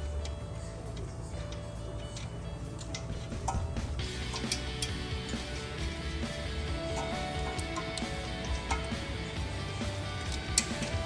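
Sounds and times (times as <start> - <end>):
background music: 0.0 - 11.0.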